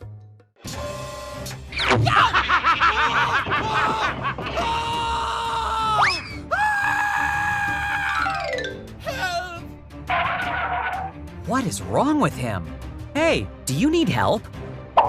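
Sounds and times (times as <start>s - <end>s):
background music: 0.0s - 15.0s
cartoon voice screaming: 9.0s - 9.6s.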